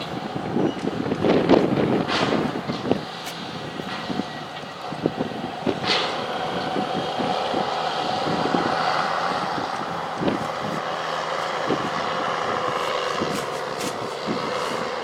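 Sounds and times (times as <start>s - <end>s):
heavy diesel machinery running: 0.0s - 15.0s.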